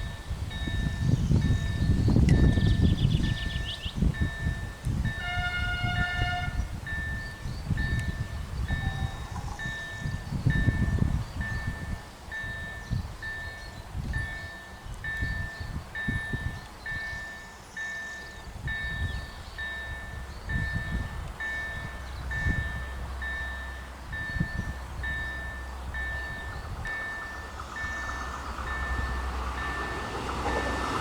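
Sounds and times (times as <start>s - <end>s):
train approaching: 0.0s - 31.0s
wind buffeting microphone: 0.0s - 31.0s
level crossing bell dinging: 6.9s - 31.0s.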